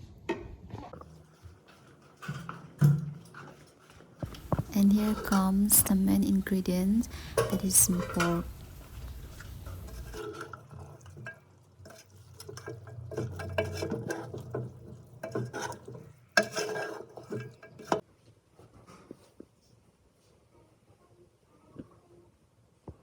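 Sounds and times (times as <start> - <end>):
utensils clinking against dishes: 4.2 - 10.6.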